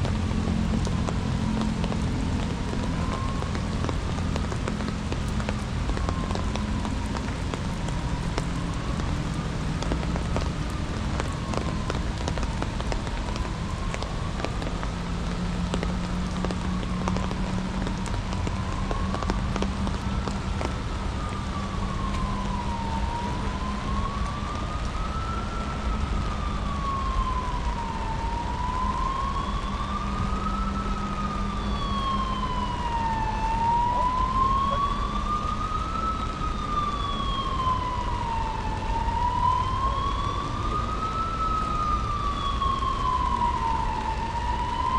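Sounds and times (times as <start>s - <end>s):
siren wailing: 0.0s - 44.9s
steady rain: 0.0s - 44.9s.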